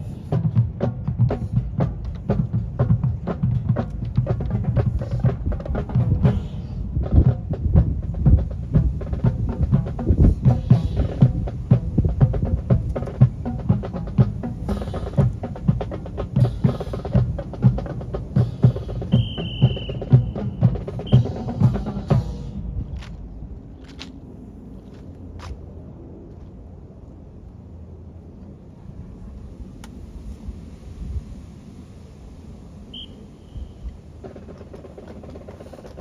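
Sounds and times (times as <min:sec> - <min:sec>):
deep bass drum beats: 0:00.0 - 0:23.1
drums and percussion rhythm: 0:00.0 - 0:24.1, 0:34.0 - 0:36.0.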